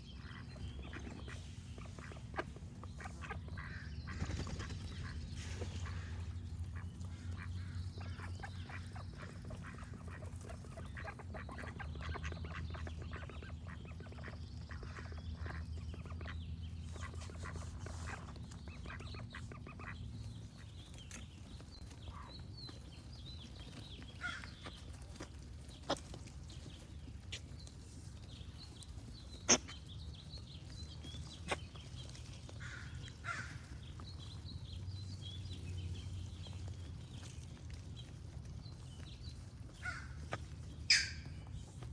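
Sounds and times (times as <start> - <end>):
ducks quacking: 0.0 - 20.9, 24.2 - 27.5, 28.3 - 37.3
small birds singing: 0.0 - 41.9.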